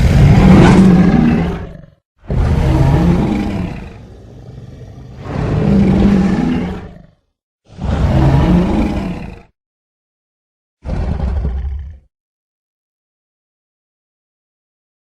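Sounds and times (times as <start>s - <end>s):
dinosaur roar: 0.0s - 9.5s, 10.8s - 12.1s.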